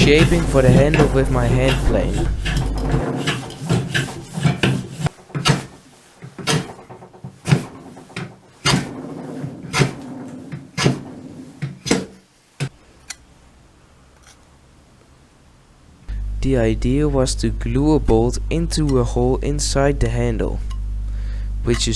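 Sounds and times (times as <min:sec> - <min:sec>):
hand plane shaving wood: 0:00.0 - 0:11.7.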